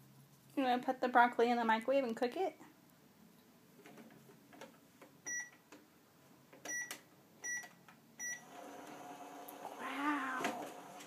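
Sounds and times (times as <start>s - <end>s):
microwave oven humming: 8.2s - 11.0s.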